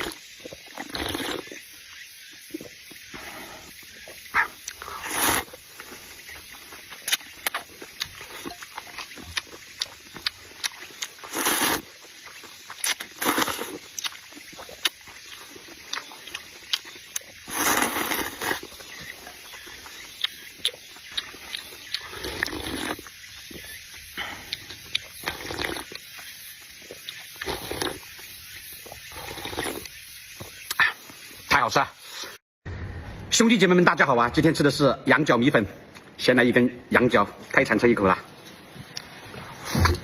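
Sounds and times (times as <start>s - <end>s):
person chewing: 0.0s - 1.6s, 4.4s - 28.0s, 28.8s - 29.9s
person slurping: 0.0s - 1.6s, 4.6s - 6.3s, 7.0s - 20.3s, 21.1s - 23.1s, 24.1s - 26.0s, 26.9s - 28.1s, 28.8s - 29.9s.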